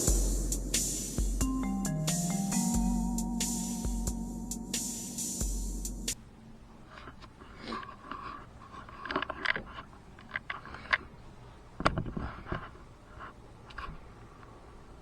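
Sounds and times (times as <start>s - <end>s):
clicks taps and scrapes: 6.9s - 11.2s.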